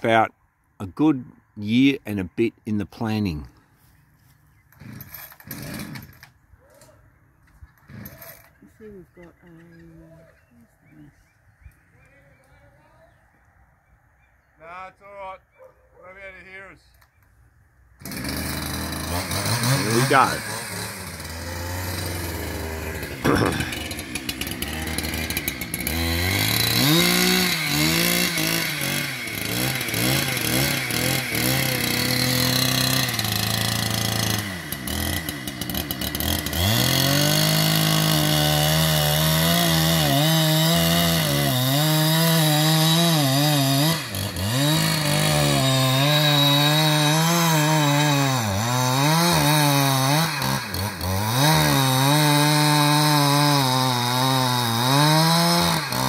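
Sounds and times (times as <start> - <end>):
chainsaw cutting wood: 4.7 - 8.7, 18.0 - 56.0.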